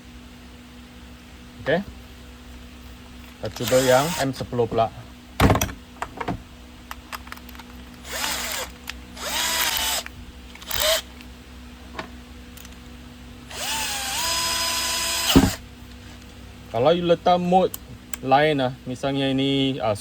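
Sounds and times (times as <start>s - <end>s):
cordless drill motor whine: 3.5s - 4.4s, 8.0s - 11.1s, 13.5s - 15.6s.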